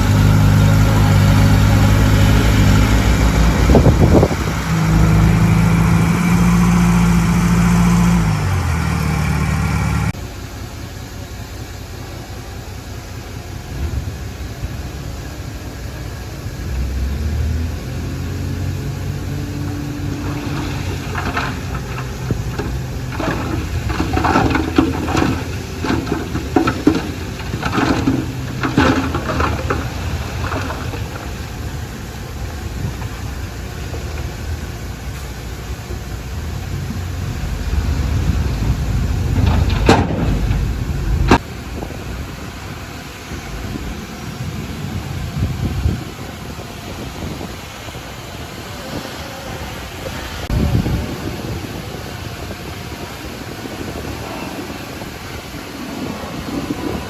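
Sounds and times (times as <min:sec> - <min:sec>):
diesel engine rumbling: 0:00.0 - 0:57.0
clattering knocks: 0:20.1 - 0:31.5, 0:39.2 - 0:41.4.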